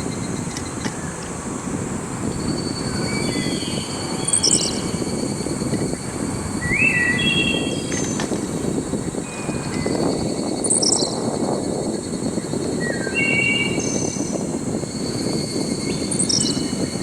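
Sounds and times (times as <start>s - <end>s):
low rumble: 0.0s - 10.6s
high insect drone: 0.0s - 17.0s
bird chirps and calls: 2.2s - 11.4s, 12.4s - 17.0s.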